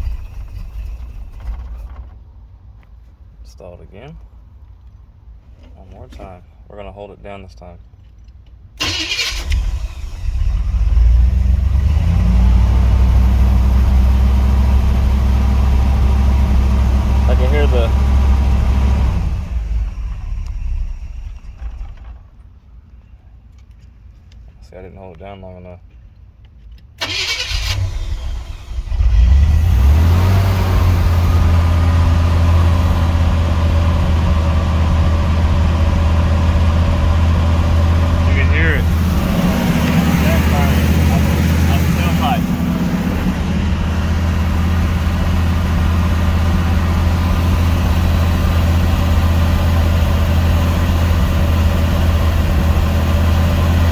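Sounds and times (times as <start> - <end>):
car engine running: 8.9 - 22.3, 27.0 - 53.9.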